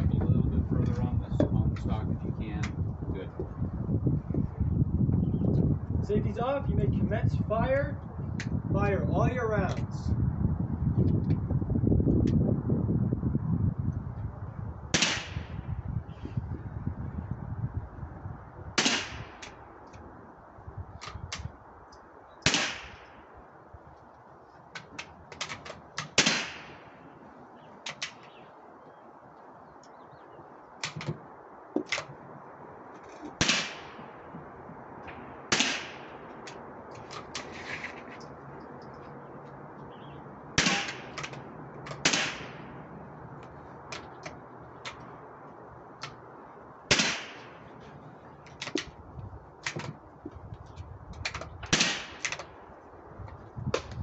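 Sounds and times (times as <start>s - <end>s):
loud rifle shots with echo: 14.9s - 15.6s, 18.8s - 19.4s, 22.4s - 23.1s, 26.2s - 26.8s, 33.4s - 34.2s, 35.5s - 36.2s, 40.6s - 41.2s, 42.0s - 42.7s, 46.9s - 47.6s, 51.7s - 52.2s
faint distant rifle cracks: 33.2s - 34.3s, 35.0s - 37.4s, 40.6s - 45.2s, 46.9s - 47.8s.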